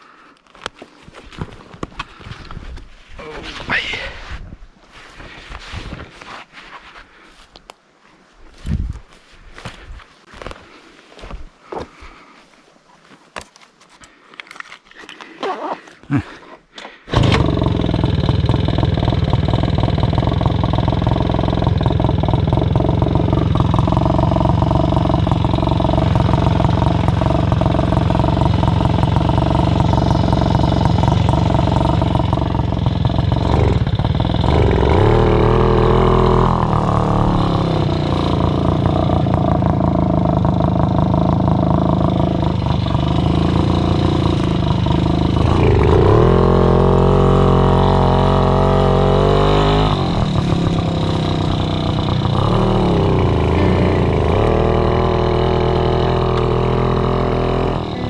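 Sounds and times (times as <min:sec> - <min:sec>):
moped engine buzzing: 0:17.1 - 0:58.0.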